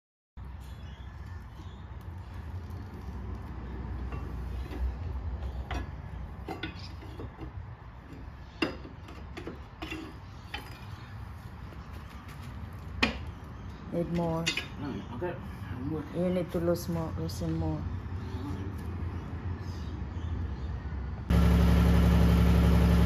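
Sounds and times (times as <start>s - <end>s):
hand tools clinking on metal: 8.6s - 11.0s.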